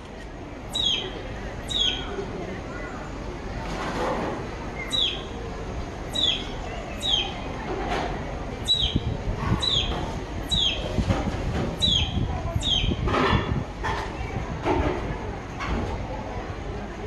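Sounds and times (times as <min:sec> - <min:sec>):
bird calling: 0:00.7 - 0:02.3, 0:04.8 - 0:05.4, 0:06.0 - 0:07.5, 0:08.6 - 0:11.0, 0:11.8 - 0:13.1.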